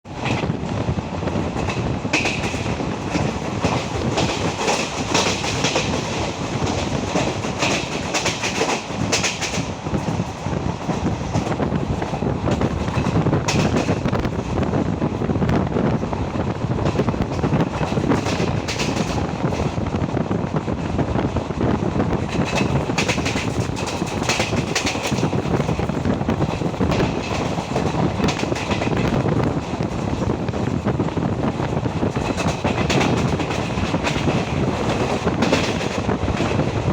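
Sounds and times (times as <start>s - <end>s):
train coach rumble: 0.0s - 36.9s
wheels clacking over rail joints: 1.4s - 14.5s, 22.1s - 36.9s.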